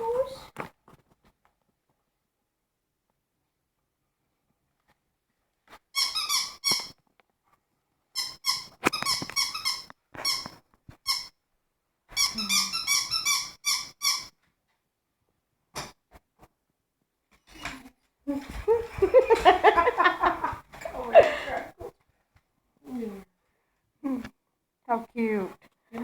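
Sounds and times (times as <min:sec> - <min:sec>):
squeaky toy squeaking: 0:05.9 - 0:07.0, 0:08.2 - 0:11.4, 0:12.1 - 0:14.4.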